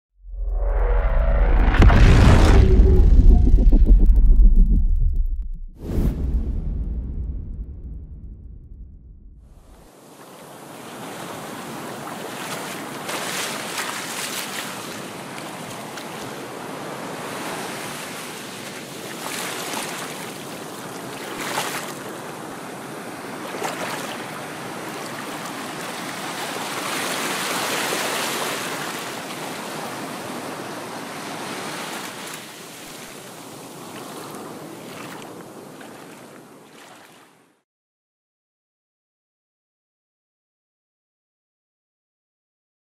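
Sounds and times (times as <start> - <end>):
sea waves washing onto shore: 9.9 - 37.2.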